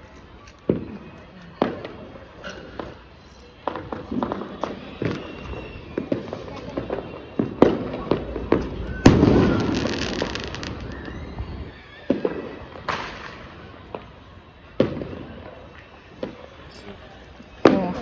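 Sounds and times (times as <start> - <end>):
firecracker bangs with echo: 1.6 - 14.2.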